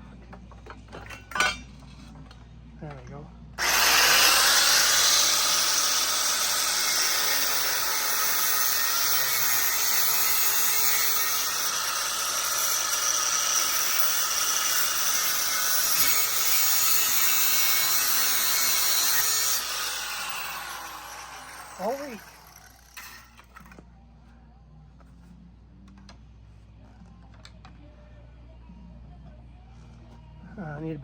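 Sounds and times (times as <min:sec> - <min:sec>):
electric power tool running: 0:03.6 - 0:23.5.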